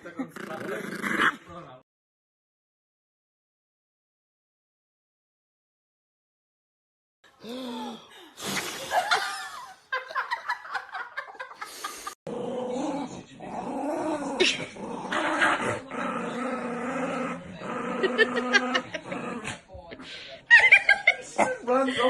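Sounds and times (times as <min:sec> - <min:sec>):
dog growling and barking: 0:00.4 - 0:01.5, 0:12.3 - 0:19.7.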